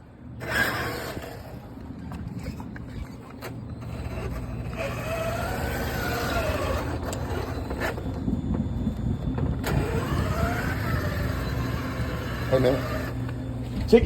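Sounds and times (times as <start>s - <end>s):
motor vehicle rumble: 0.0s - 14.0s.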